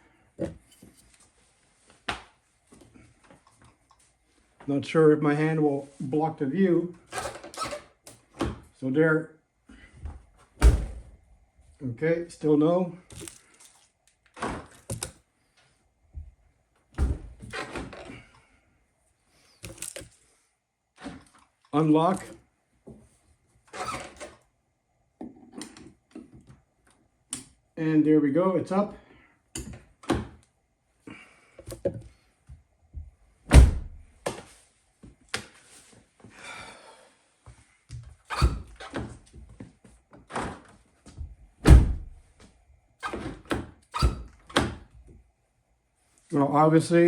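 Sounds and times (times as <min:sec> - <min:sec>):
heavy door clunk with rattle: 0:10.6 - 0:11.0, 0:33.5 - 0:34.0, 0:40.3 - 0:42.2
car door shutting: 0:41.6 - 0:42.2.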